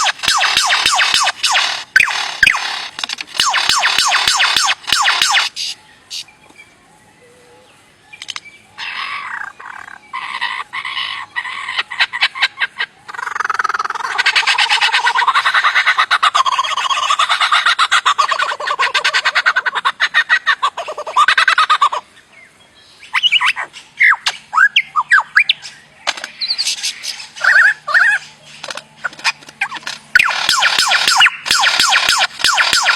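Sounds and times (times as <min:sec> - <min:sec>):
bird chirps and whistles: 0:00.0 - 0:02.6, 0:03.4 - 0:06.4, 0:30.2 - 0:32.9
bird rattling call: 0:00.0 - 0:06.2, 0:26.0 - 0:32.9
bird warbling: 0:00.0 - 0:06.3, 0:08.2 - 0:22.1, 0:23.1 - 0:32.9.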